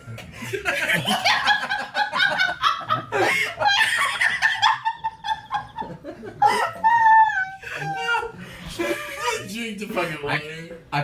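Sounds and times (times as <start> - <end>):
people laughing and snickering: 0.3 - 9.5.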